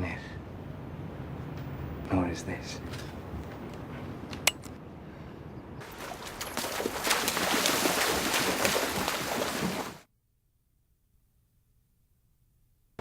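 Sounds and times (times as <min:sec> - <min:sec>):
rushing wind and sea: 0:04.8 - 0:10.0.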